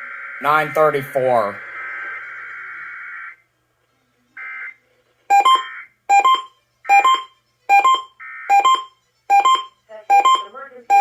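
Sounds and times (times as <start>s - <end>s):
radio broadcast: 0.0s - 3.4s
data tone burst: 5.3s - 11.0s
electronic beeps: 5.3s - 11.0s.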